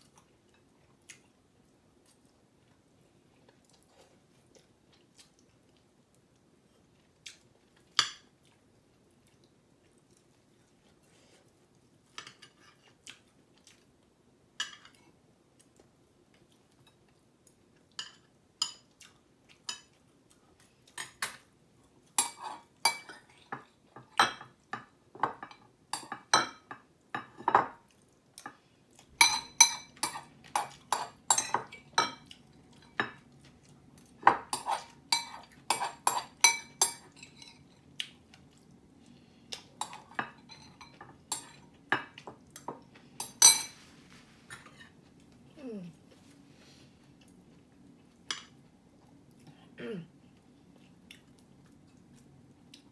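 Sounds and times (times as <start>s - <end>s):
metal cutlery clinking on bowl: 12.1s - 12.9s, 22.2s - 27.8s, 29.2s - 33.2s, 34.2s - 37.7s, 39.8s - 42.4s, 43.2s - 43.8s.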